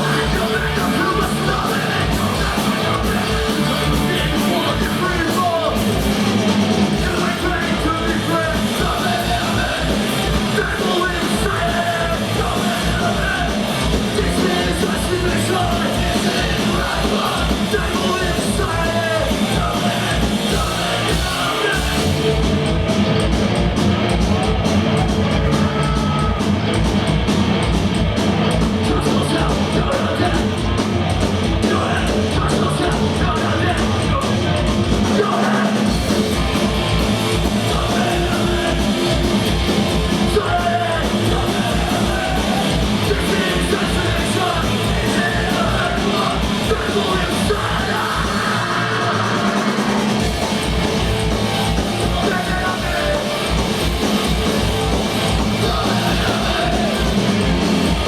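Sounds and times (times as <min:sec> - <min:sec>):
punk rock band playing: 0:00.0 - 0:58.0
shouted vocals: 0:24.0 - 0:26.8, 0:31.5 - 0:50.8, 0:55.3 - 0:58.0.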